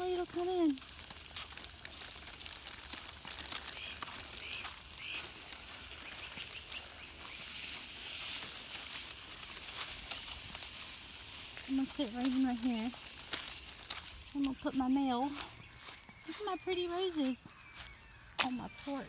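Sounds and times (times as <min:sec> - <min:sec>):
faint bird chirps: 0:03.6 - 0:07.8, 0:14.4 - 0:19.0.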